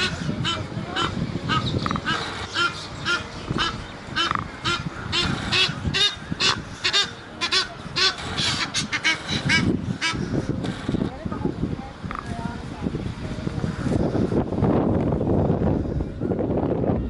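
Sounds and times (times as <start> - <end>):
geese honking: 0.0 - 10.4.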